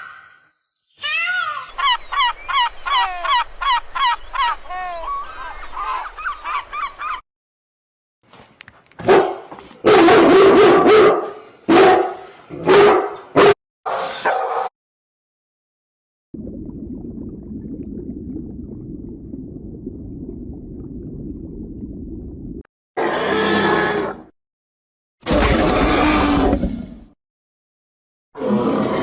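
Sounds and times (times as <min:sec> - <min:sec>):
dog barking and yelping: 0:09.0 - 0:13.6
steady low rumble: 0:16.4 - 0:22.7.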